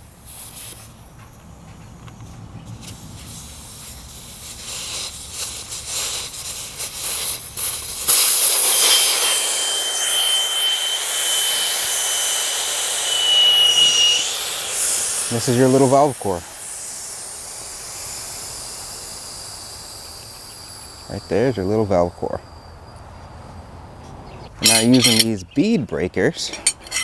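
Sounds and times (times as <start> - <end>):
air hissing from tire valve: 0.0 - 23.2
thin steady whistle: 3.2 - 23.1, 24.6 - 25.3.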